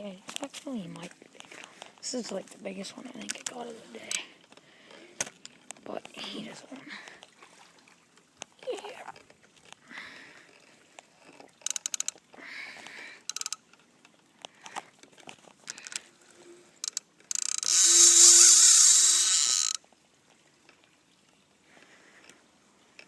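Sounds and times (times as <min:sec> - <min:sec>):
fishing reel drag clicking: 0:10.5 - 0:12.2, 0:13.2 - 0:13.8, 0:15.7 - 0:19.8.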